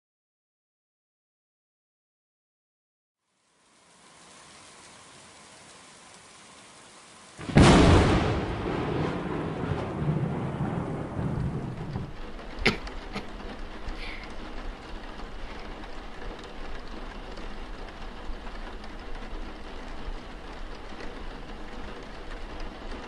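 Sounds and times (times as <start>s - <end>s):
steady rain: 3.2s - 23.0s
thunder rumble: 7.4s - 23.0s.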